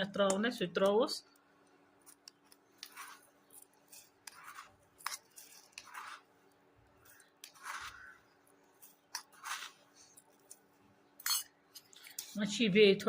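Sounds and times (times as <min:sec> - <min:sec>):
mixture mashed in a bowl: 0:02.0 - 0:11.5.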